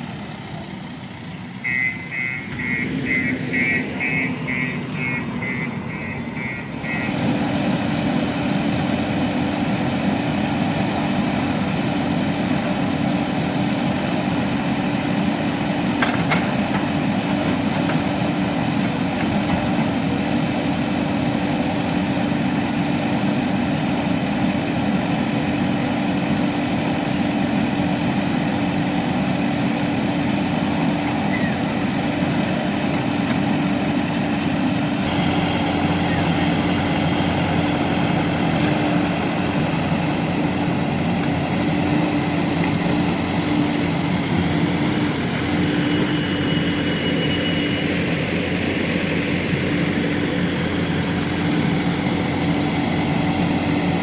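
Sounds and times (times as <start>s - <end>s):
diesel engine running: 0.0s - 54.0s
reversing alarm beeping: 1.6s - 7.2s, 45.0s - 48.6s.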